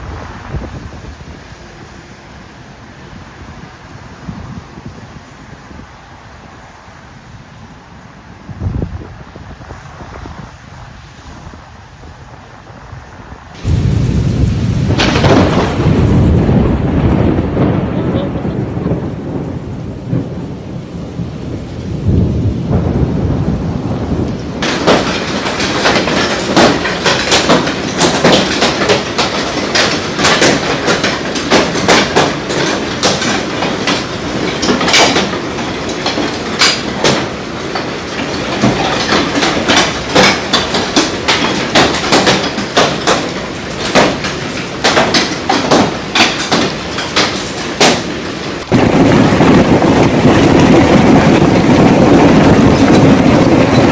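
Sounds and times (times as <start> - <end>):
rain: 0.0 - 53.9
storm roar: 0.0 - 53.9
hailstones striking hard surfaces: 13.6 - 16.6, 24.6 - 53.9.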